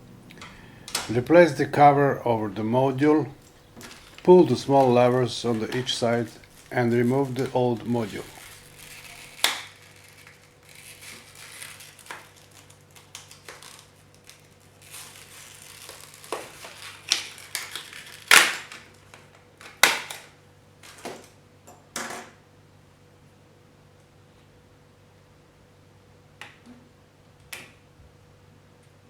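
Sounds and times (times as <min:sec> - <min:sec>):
handling rattles: 0:03.3 - 0:10.2.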